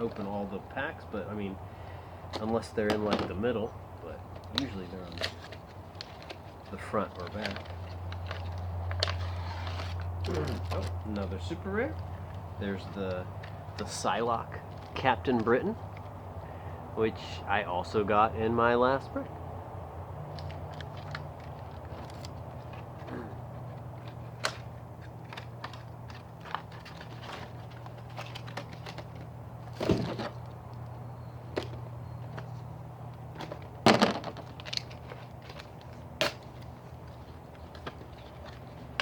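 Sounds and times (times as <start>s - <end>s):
loud plastic crackles: 4.3s - 11.3s, 20.3s - 39.0s.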